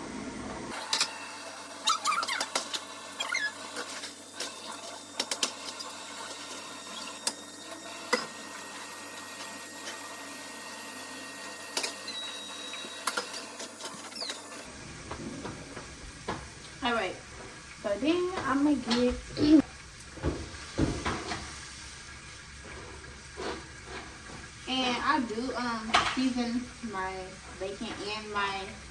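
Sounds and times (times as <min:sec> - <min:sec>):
dishes and utensils clinking: 0:25.8 - 0:26.4.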